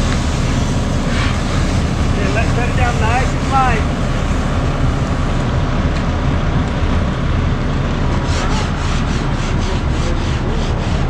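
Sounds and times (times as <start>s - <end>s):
heavy engine rumbling: 0.0s - 11.0s.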